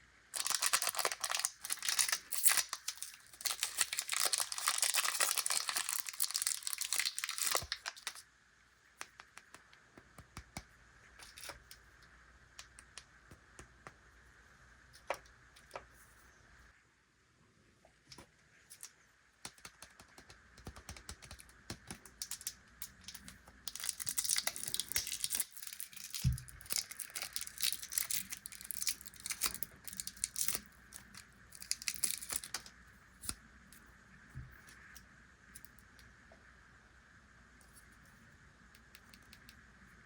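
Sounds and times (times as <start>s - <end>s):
plastic packaging crinkling and tearing: 0.4s - 8.2s, 22.2s - 32.7s.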